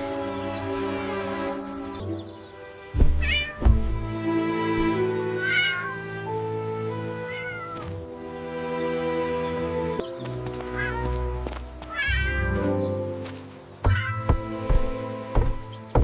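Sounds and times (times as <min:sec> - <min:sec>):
background music: 0:00.0 - 0:16.0
cat meowing: 0:03.2 - 0:03.6, 0:05.4 - 0:06.0, 0:07.2 - 0:07.9, 0:10.8 - 0:11.0, 0:11.9 - 0:12.6, 0:13.8 - 0:14.4.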